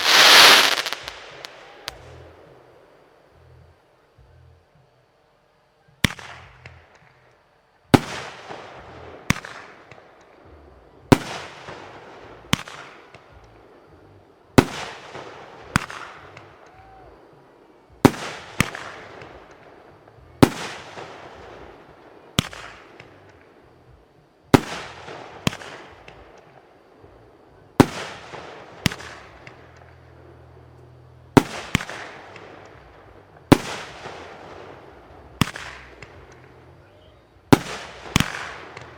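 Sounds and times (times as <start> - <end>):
sharp firework bangs: 0.0 - 2.2, 33.5 - 36.6, 37.5 - 38.9
rumble after fireworks: 0.0 - 38.9.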